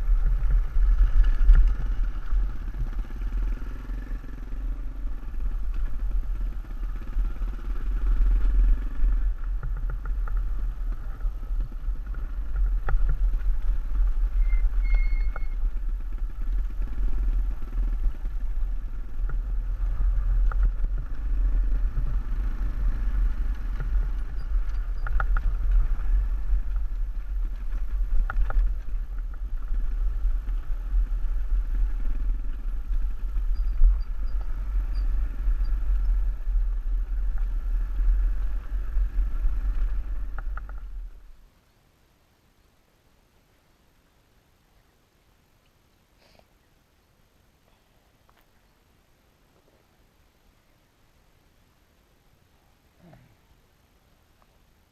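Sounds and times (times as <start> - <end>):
vehicle rumbling: 0.0 - 54.9
rattles and clicks: 0.3 - 3.0.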